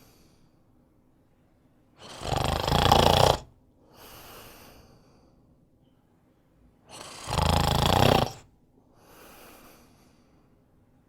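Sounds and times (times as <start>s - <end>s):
faint breath: 0.0s - 0.8s, 3.8s - 6.0s, 8.2s - 10.8s.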